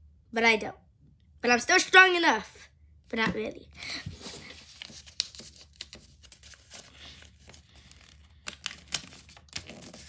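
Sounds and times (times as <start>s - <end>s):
paper crinkling and snapping: 4.2s - 10.0s.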